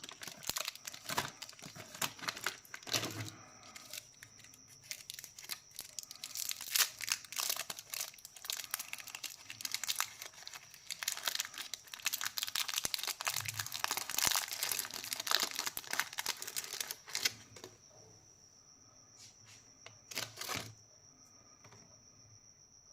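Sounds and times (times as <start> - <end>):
plastic wrappers crinkling and tearing: 0.0 - 17.5, 20.1 - 20.7
faint high-pitched tone: 16.4 - 22.9.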